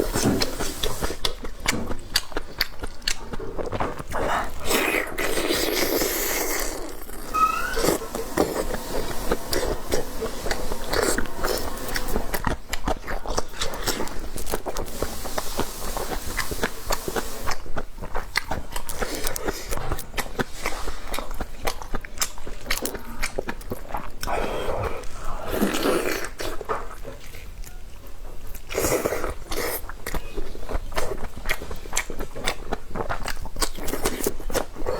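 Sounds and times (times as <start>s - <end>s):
brief hissing noise: 0.0s - 1.2s, 7.2s - 12.4s, 14.8s - 17.6s
chewing and biting: 0.0s - 7.2s
short squeak: 7.1s - 12.4s.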